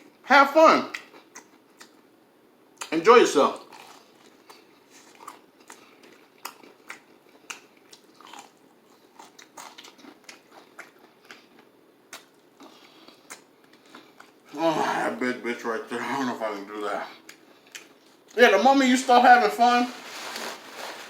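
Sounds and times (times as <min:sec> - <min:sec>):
person chewing crunchy food: 0:00.9 - 0:02.0, 0:03.6 - 0:14.4.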